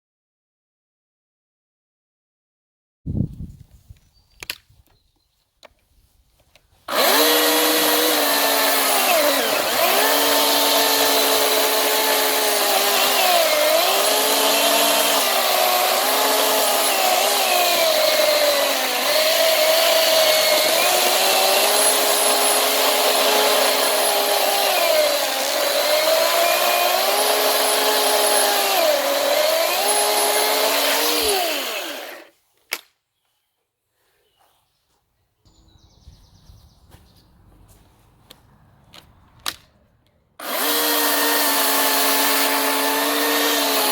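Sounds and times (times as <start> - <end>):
chainsaw cutting log: 6.9 - 32.4, 40.4 - 43.9.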